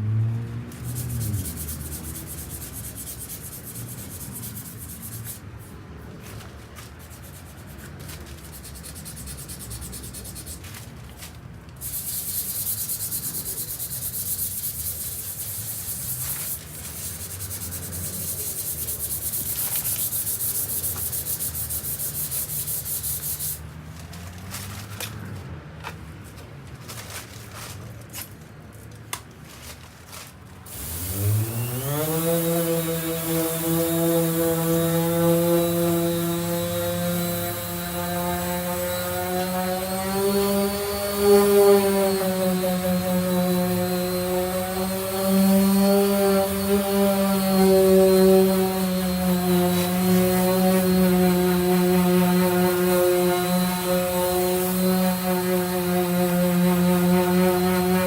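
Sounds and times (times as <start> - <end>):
power sander scraping filler: 0.7 - 5.5, 11.8 - 23.6, 30.7 - 58.0.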